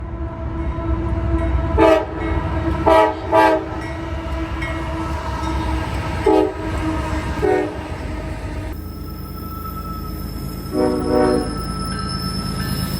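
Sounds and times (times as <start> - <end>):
train rumbling: 0.0 - 12.9
train horn: 1.7 - 8.8, 10.7 - 11.7.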